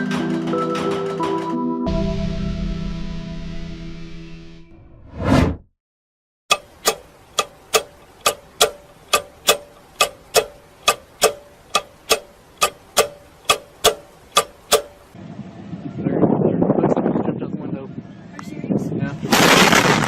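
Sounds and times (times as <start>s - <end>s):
clock ticking: 6.5s - 15.2s.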